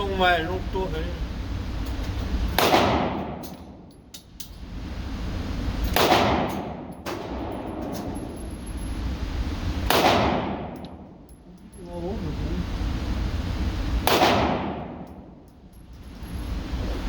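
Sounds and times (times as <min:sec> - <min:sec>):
handgun shots with ringing echo: 0:02.6 - 0:03.8, 0:05.9 - 0:08.1, 0:09.9 - 0:10.9, 0:14.1 - 0:15.2.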